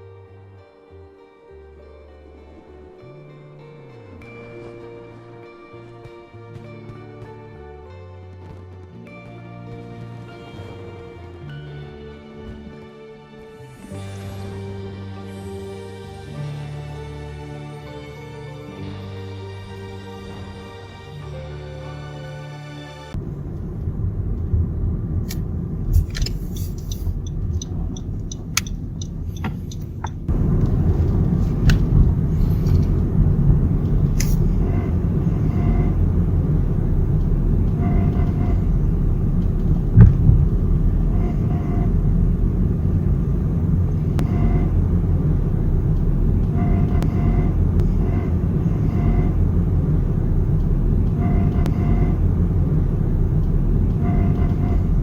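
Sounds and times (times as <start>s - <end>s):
car road rumble: 23.1s - 55.0s
sharp clicks: 25.2s - 33.0s.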